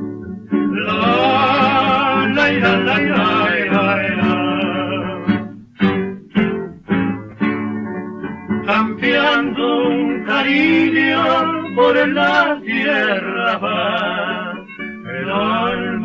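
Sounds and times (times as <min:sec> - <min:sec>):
acoustic guitar strums: 0:00.0 - 0:16.0
man singing wordlessly: 0:00.7 - 0:05.6, 0:08.6 - 0:16.0.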